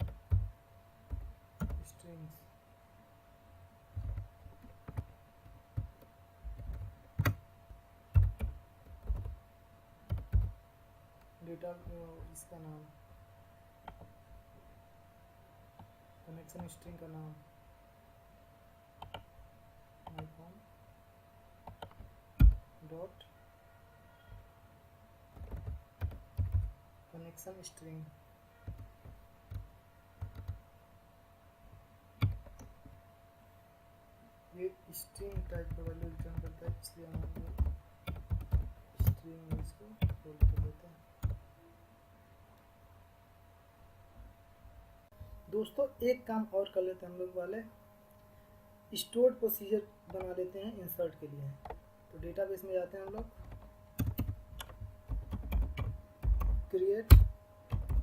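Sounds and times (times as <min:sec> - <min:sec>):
faint steady hum: 0:00.0 - 0:58.0
computer keyboard typing: 0:01.1 - 0:01.9, 0:04.0 - 0:05.1, 0:05.7 - 0:07.4, 0:08.1 - 0:09.4, 0:10.1 - 0:10.6, 0:19.0 - 0:19.3, 0:21.7 - 0:22.6, 0:25.3 - 0:26.7, 0:28.6 - 0:30.6, 0:32.2 - 0:32.7, 0:35.2 - 0:41.4, 0:53.0 - 0:58.0.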